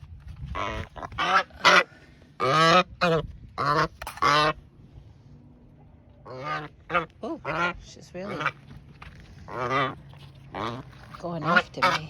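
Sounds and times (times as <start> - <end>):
goose honking: 0.5 - 4.6, 6.2 - 8.6, 9.4 - 12.0.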